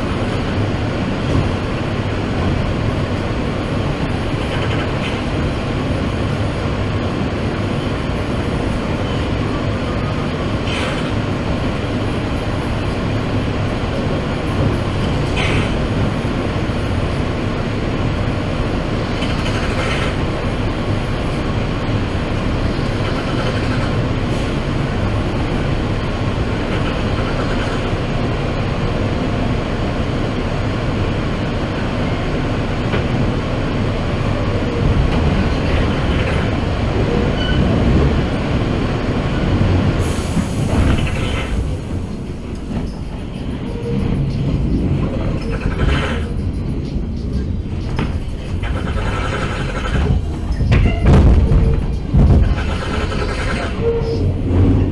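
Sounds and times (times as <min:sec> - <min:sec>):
subway wheels rumbling on rail: 0:00.0 - 0:54.9
wheels screeching: 0:15.0 - 0:17.3, 0:39.4 - 0:54.9.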